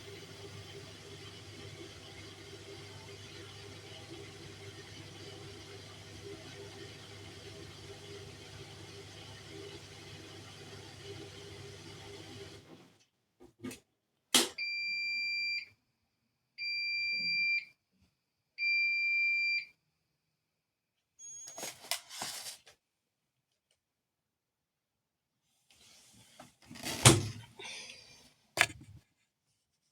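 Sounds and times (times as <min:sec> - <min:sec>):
washing machine hum: 0:00.0 - 0:13.0, 0:26.7 - 0:29.0.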